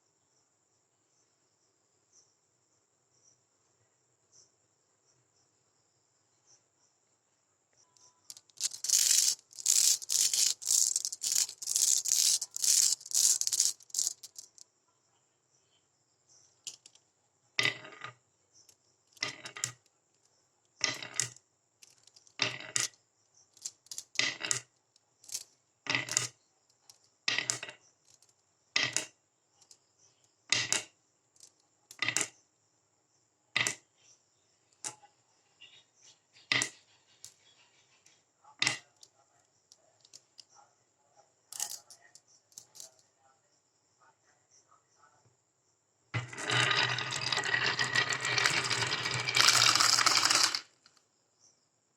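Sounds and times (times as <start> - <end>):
glass marbles clattering on track: 8.3 - 14.6, 19.2 - 19.8, 20.8 - 22.9, 23.6 - 24.7, 25.3 - 26.4, 31.9 - 32.3, 41.5 - 43.0, 46.2 - 50.8.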